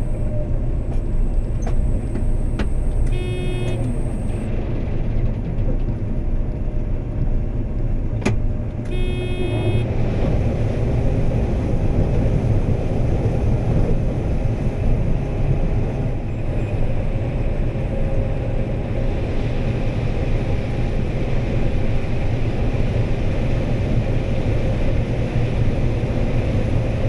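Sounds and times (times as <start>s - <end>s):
short pitched beep: 0.0s - 4.5s, 8.9s - 9.9s
combine harvester rumble: 0.0s - 27.0s.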